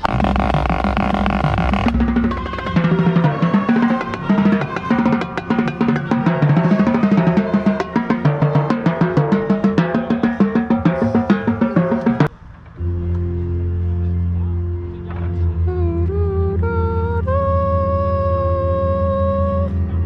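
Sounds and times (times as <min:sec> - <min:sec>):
snare drums rolling: 0:00.0 - 0:12.3
brass chords: 0:00.0 - 0:20.0.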